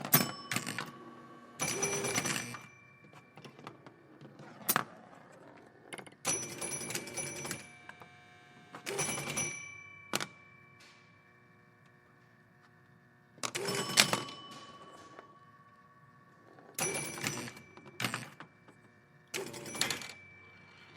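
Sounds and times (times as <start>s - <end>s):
pinball machine clacking and knocking: 0.0s - 1.0s, 1.6s - 4.0s, 13.4s - 15.4s, 19.4s - 20.3s
pinball bells ringing: 0.0s - 4.0s, 6.2s - 8.2s, 8.8s - 11.8s, 13.4s - 20.9s.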